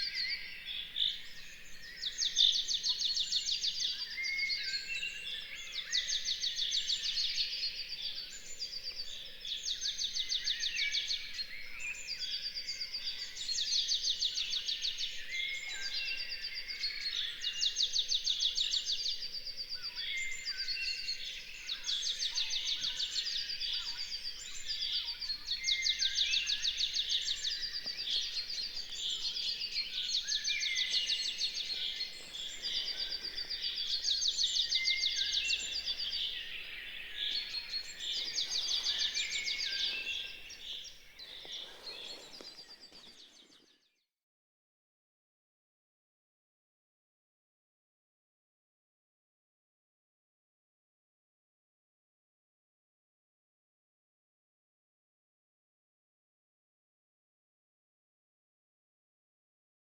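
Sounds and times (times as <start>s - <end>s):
songbirds singing trilled phrases: 24.4s - 43.7s.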